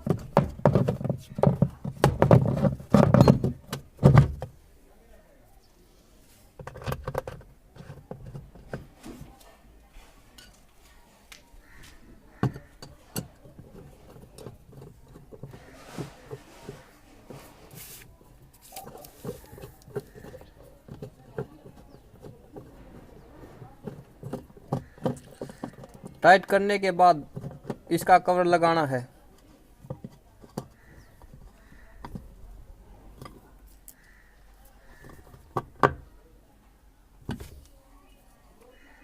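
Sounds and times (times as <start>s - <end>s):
hand tools clicking and tapping: 11.8s - 16.9s, 18.2s - 28.2s, 29.4s - 32.4s.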